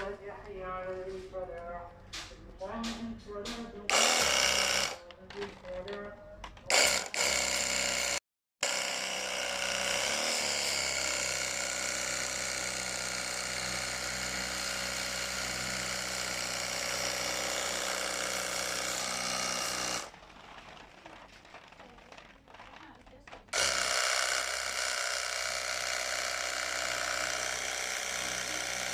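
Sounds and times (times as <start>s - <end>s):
pressure washer pump running: 3.9s - 5.0s, 6.7s - 21.0s, 23.5s - 28.9s.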